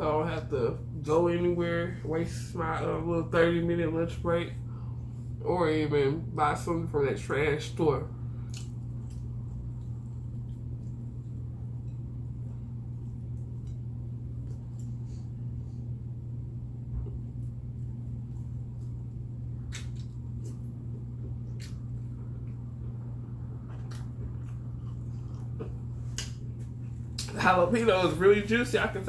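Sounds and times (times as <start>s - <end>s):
steady low hum: 0.0s - 29.0s
chewing mouth sounds: 8.4s - 15.1s, 17.4s - 27.4s.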